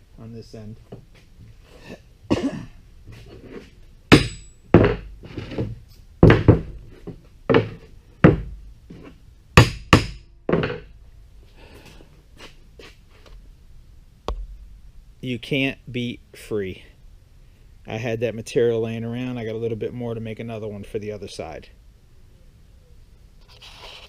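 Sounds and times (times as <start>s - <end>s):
hammer striking steel: 4.1s - 5.0s, 9.6s - 10.7s.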